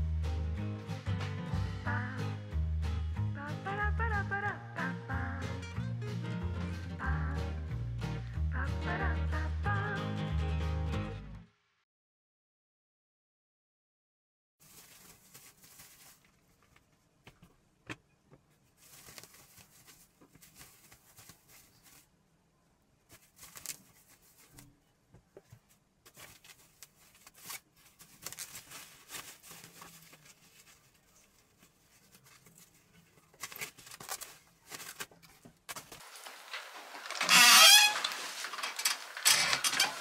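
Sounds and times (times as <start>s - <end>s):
rustling of household things: 14.6s - 17.0s, 18.4s - 22.2s, 23.0s - 40.0s.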